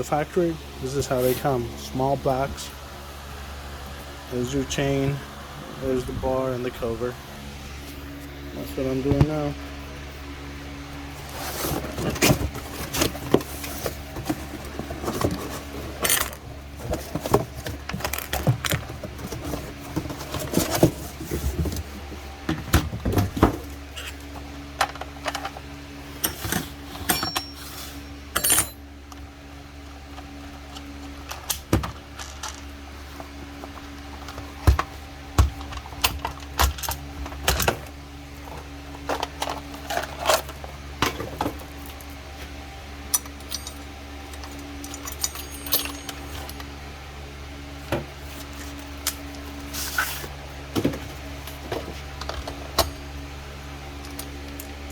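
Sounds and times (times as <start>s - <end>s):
steady low hum: 0.0s - 54.9s
metallic clinks and knocks: 27.0s - 27.6s, 44.8s - 46.6s.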